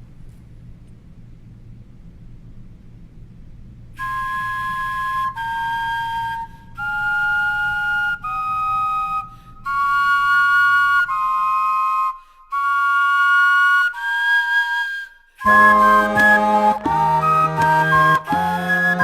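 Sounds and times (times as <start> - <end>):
vegetable flutes playing melody: 4.0 - 19.0.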